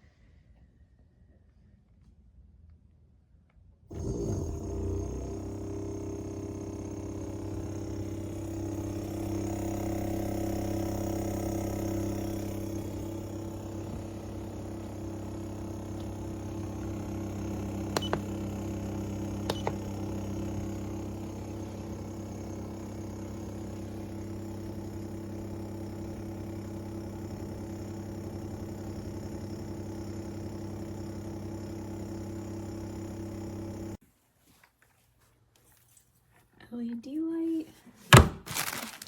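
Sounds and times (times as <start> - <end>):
low machine hum: 3.9 - 34.0.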